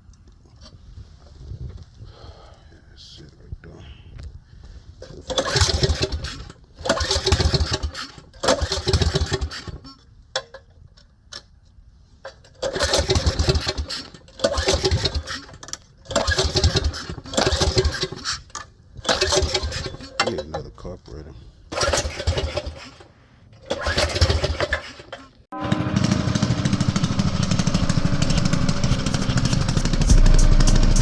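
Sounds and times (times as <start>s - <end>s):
small engine revving in bursts: 5.4s - 9.7s, 23.7s - 24.9s, 25.6s - 31.0s.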